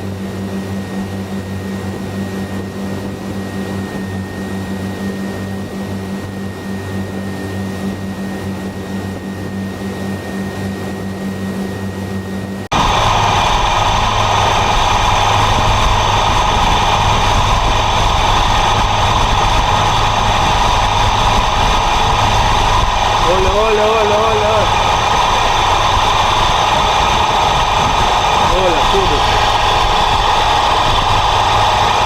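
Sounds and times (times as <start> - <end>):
engine humming with faint whine: 0.0 - 32.0
rough rumbling engine: 12.7 - 32.0.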